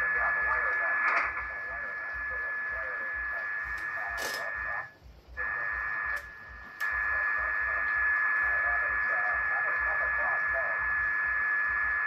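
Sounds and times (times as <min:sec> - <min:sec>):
faint radio voice: 0:00.0 - 0:11.1
radio static hiss: 0:00.0 - 0:12.0
sharp radio clicks: 0:00.2 - 0:02.0, 0:02.6 - 0:08.6.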